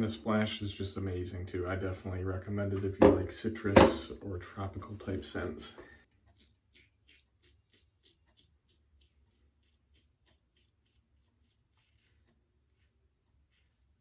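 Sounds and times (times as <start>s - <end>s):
razor scraping stubble: 6.2s - 14.0s.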